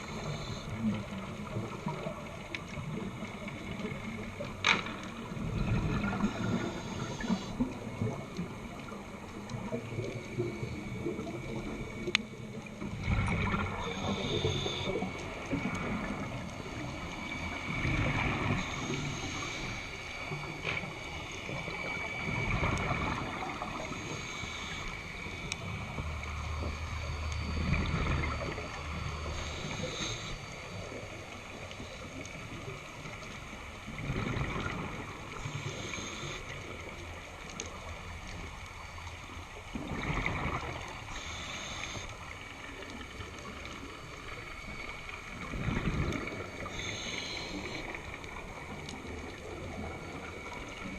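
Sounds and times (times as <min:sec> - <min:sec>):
hissing regulator inhale: 0:00.0 - 0:00.9, 0:06.0 - 0:08.0, 0:13.4 - 0:26.8, 0:29.2 - 0:31.1, 0:35.3 - 0:36.9, 0:40.9 - 0:42.8, 0:45.8 - 0:48.7
gush of exhaled bubbles: 0:05.2 - 0:19.7, 0:33.9 - 0:36.3, 0:39.7 - 0:41.0, 0:44.6 - 0:50.9.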